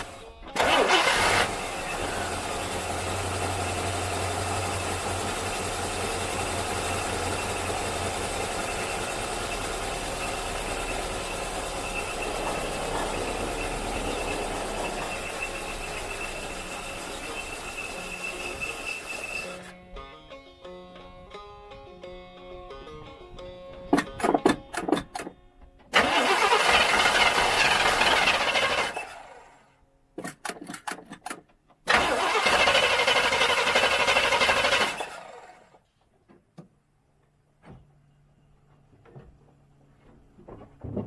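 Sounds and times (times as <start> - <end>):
car engine running roughly: 0.0 - 19.7, 26.0 - 29.6, 31.9 - 35.7.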